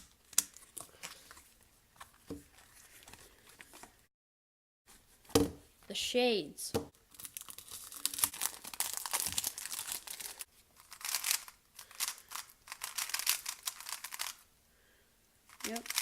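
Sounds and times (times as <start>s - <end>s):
plastic packaging crinkling: 7.1s - 14.4s, 15.5s - 16.0s.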